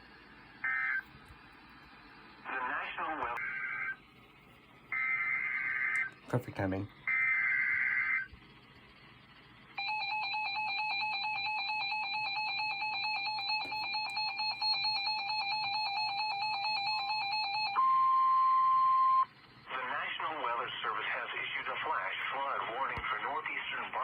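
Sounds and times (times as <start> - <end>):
steady warning alarm tone: 4.9 - 19.7
electronic alarm stepping tones: 9.8 - 19.3.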